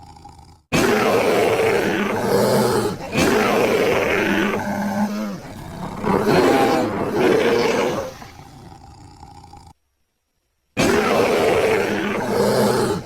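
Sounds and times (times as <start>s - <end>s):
bear roaring: 0.0s - 9.8s, 10.8s - 13.0s.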